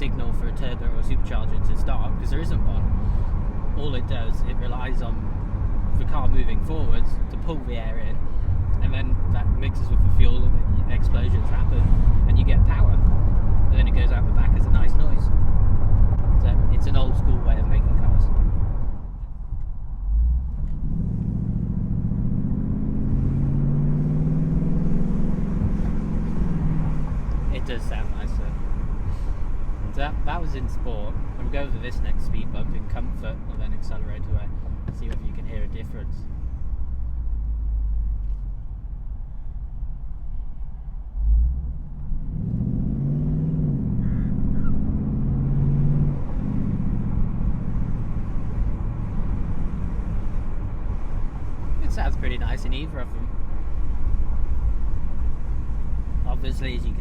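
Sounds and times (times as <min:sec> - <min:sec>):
car engine accelerating: 0:00.0 - 0:39.2, 0:40.2 - 0:57.0
low thump over speed bump: 0:34.6 - 0:35.4.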